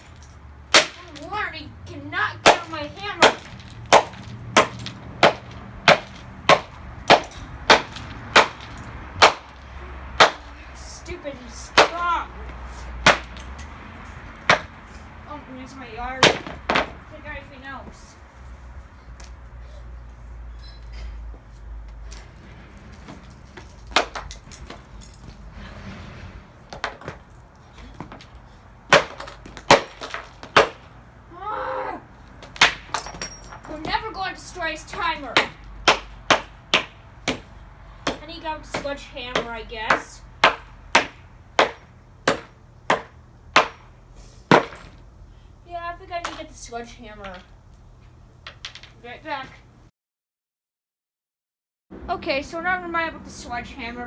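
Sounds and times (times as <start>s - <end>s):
hammer hitting hard plastic: 2.4s - 9.6s, 10.2s - 10.5s, 13.0s - 13.4s, 14.5s - 14.7s, 28.9s - 30.9s, 38.8s - 43.9s, 44.5s - 45.0s
hammer striking hard plastic: 28.9s - 30.9s, 40.4s - 43.9s.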